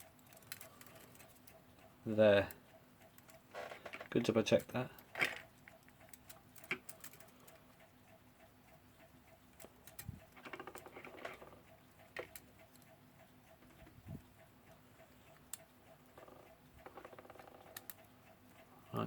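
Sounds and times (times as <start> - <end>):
clock parts rattling: 0.0 - 2.5, 3.2 - 7.6, 9.5 - 14.0
mechanical clock ticking: 0.0 - 19.0.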